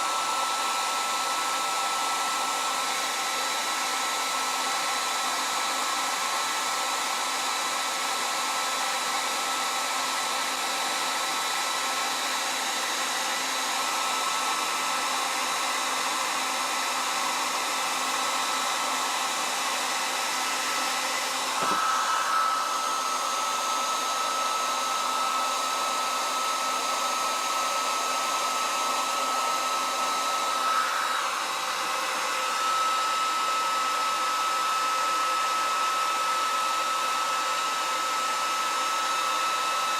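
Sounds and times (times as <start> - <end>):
hair dryer running: 0.0 - 39.9
brief knock: 21.6 - 21.8.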